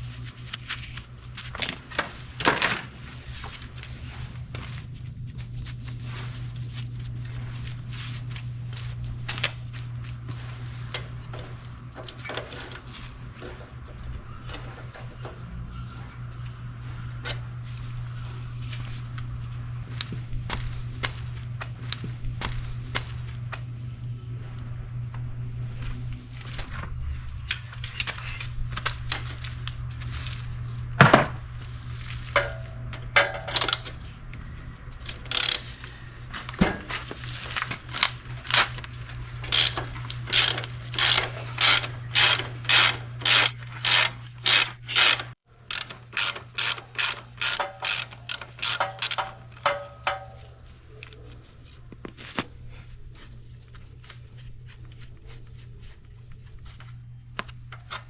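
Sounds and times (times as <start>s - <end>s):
steady low hum: 0.0s - 58.0s
loud metal clank: 31.0s - 31.4s
ratchet wrench clicking: 32.0s - 34.0s, 35.0s - 35.8s, 39.4s - 50.4s.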